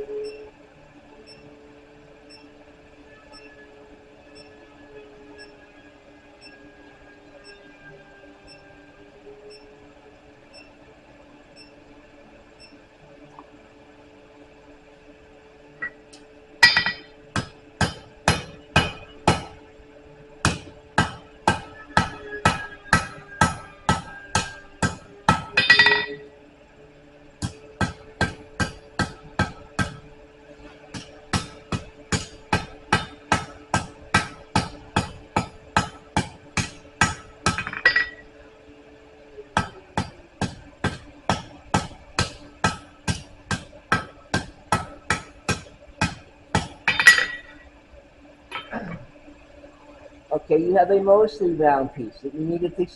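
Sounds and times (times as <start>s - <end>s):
steady hum: 0.0s - 52.9s
hammer ringing on anvil: 16.6s - 19.5s, 20.5s - 26.3s, 36.6s - 38.2s, 46.9s - 47.6s.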